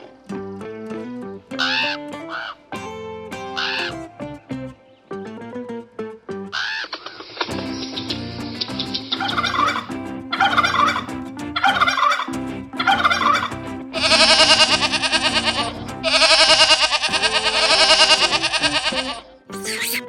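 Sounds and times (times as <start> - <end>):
background music: 0.0 - 20.0
pulsing rattling animal calls: 19.6 - 20.0
short animal calls: 19.6 - 20.0.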